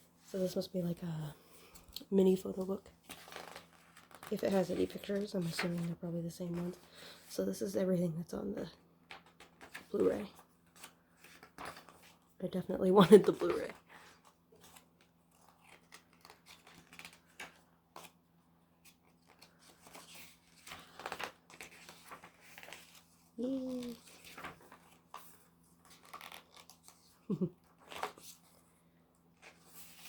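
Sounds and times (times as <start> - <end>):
paper and plastic rustling: 1.8 - 6.8, 18.8 - 28.6.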